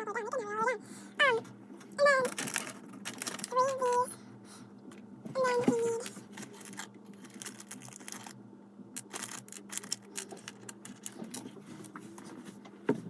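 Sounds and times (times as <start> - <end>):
faint steady hum: 0.0 - 13.0
plastic pieces clicking and rattling: 2.2 - 4.1, 5.7 - 8.4, 9.0 - 12.0.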